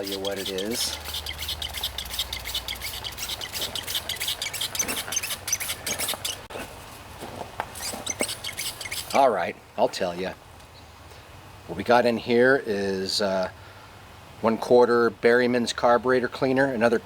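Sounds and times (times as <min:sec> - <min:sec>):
small birds chirping: 0:00.0 - 0:06.7, 0:07.7 - 0:09.4.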